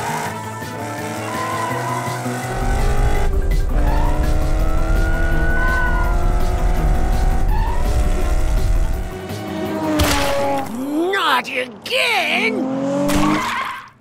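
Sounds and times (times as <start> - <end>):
race car engine running hard: 0.0 - 10.7
background music: 0.0 - 12.9
tyres squealing: 0.2 - 2.6.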